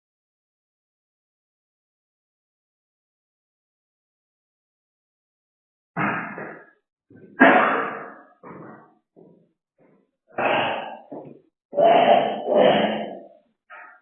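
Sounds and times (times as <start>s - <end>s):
person coughing: 6.0s - 6.6s, 7.4s - 8.6s, 11.8s - 13.3s
throat clearing: 6.0s - 8.8s, 10.3s - 14.0s.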